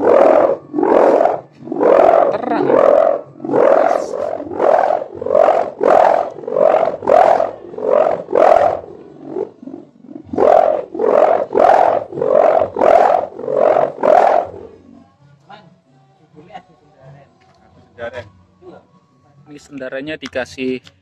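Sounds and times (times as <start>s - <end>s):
kite hummer droning: 0.0s - 15.0s.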